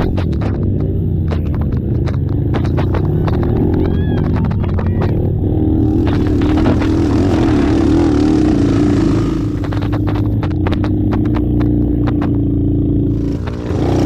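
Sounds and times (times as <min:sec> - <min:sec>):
atv engines revving: 0:00.0 - 0:14.0
sharp ticks and clatter: 0:00.0 - 0:14.0.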